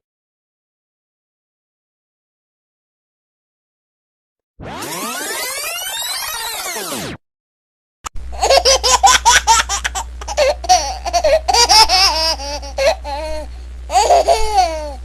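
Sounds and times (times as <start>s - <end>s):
steady low hum: 8.1s - 15.0s
baby laughing: 8.3s - 15.0s.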